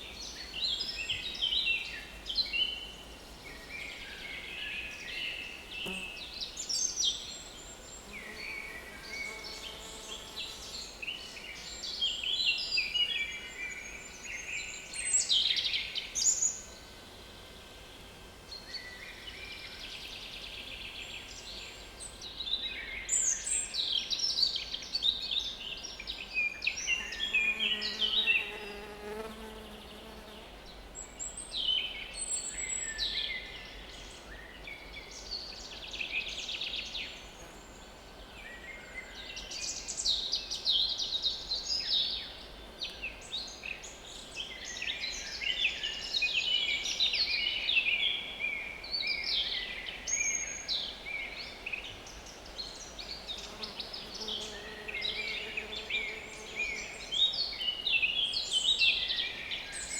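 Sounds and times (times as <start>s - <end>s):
songbirds singing and calling: 0.0s - 17.0s, 17.6s - 59.9s
flying insect buzzing: 27.0s - 30.5s.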